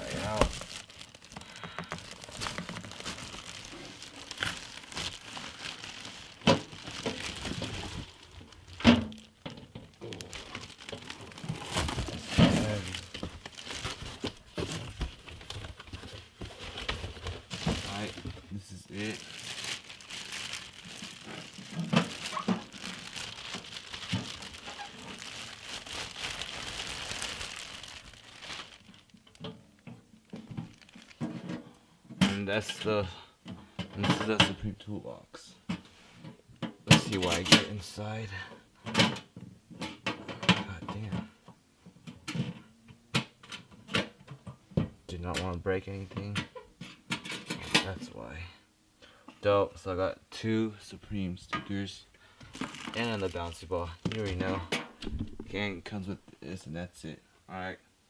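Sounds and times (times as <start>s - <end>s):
packaging crinkling: 0.0s - 31.4s, 52.4s - 54.4s, 55.0s - 55.9s.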